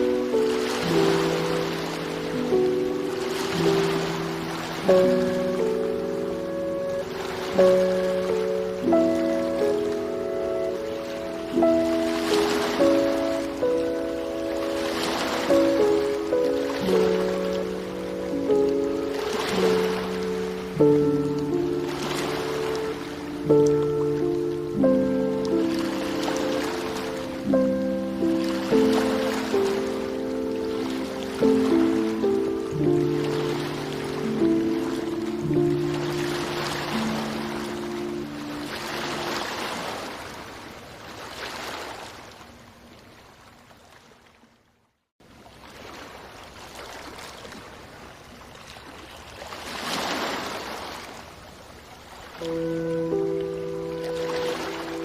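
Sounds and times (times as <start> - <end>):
soft relaxation music: 0.0 - 40.7, 51.9 - 55.0
ocean waves washing in: 0.0 - 44.3, 45.3 - 55.0.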